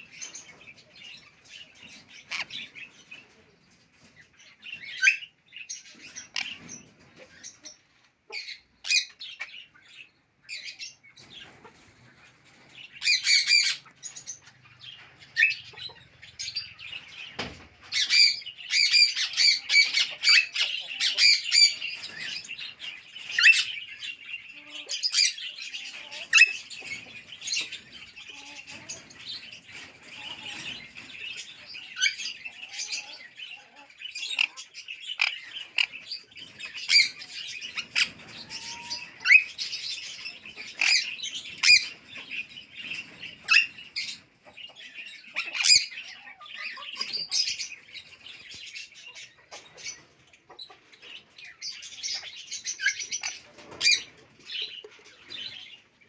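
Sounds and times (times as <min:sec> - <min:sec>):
parakeet squawking and chirping: 0:24.8 - 0:44.2.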